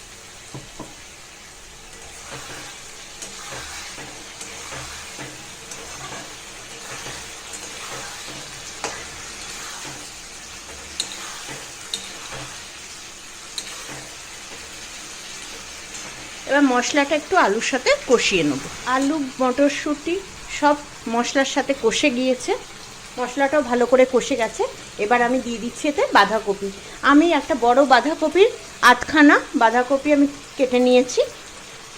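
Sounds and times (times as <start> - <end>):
food sizzling in hot oil: 0.0 - 31.9
scraping stirring strokes: 1.9 - 16.4.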